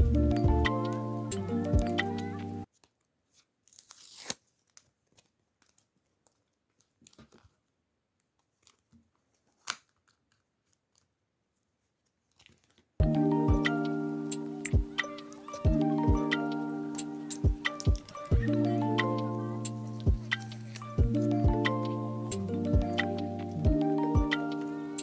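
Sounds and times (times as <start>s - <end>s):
packaging tearing: 2.7s - 7.6s, 19.7s - 21.0s.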